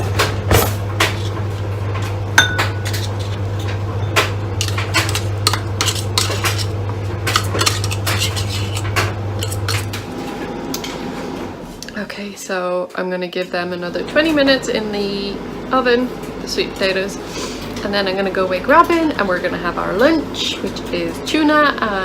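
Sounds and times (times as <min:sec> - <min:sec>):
steady low hum: 0:00.0 - 0:12.3
dishes and cutlery clinking: 0:02.4 - 0:10.0.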